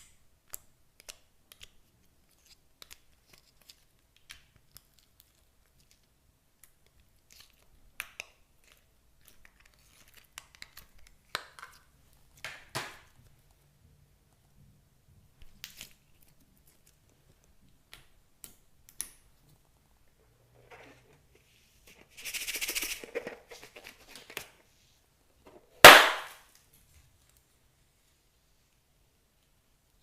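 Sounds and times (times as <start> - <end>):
slime air pocket popping: 25.8 - 26.3.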